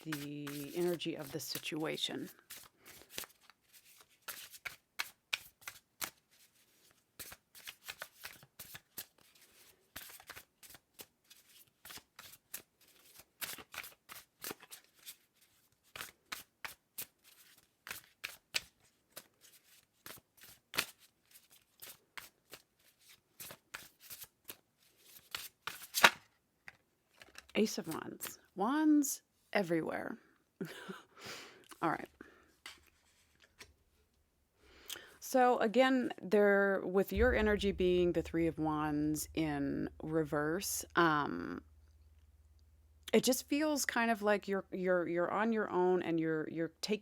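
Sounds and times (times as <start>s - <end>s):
cards being shuffled: 0.0s - 10.8s, 32.7s - 33.8s.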